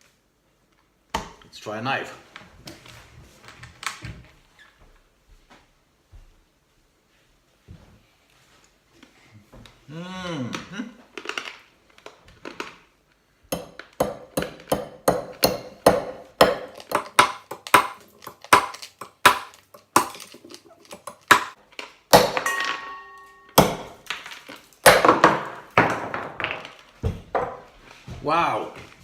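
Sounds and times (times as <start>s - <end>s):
knife chopping hard candy: 13.5s - 22.6s, 23.2s - 26.2s.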